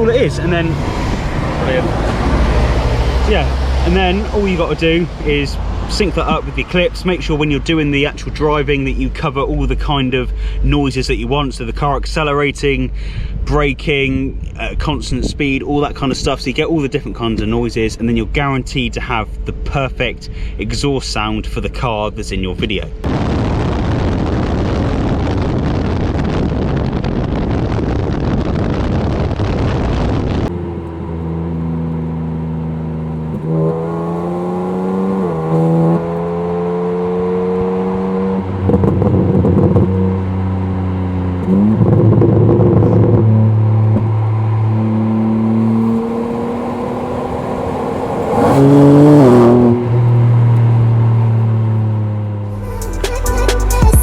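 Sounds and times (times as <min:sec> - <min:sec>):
wind buffeting microphone: 0:00.0 - 0:06.7, 0:23.0 - 0:30.6
car engine accelerating: 0:00.0 - 0:11.4, 0:23.0 - 0:54.0.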